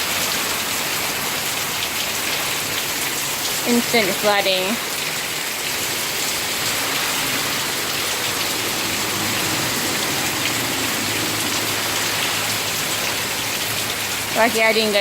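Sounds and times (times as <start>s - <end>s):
heavy rain pouring: 0.0s - 15.0s.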